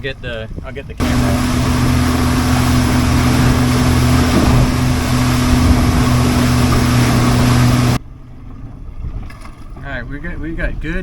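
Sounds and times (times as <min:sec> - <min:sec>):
outboard motor humming: 0:01.0 - 0:08.0
rushing water: 0:01.0 - 0:08.0
rushing wind: 0:01.0 - 0:08.0.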